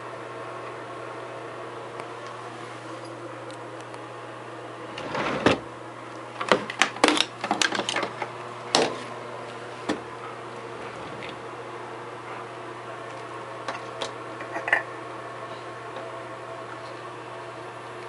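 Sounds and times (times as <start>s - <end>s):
hair dryer humming: 8.3s - 14.4s.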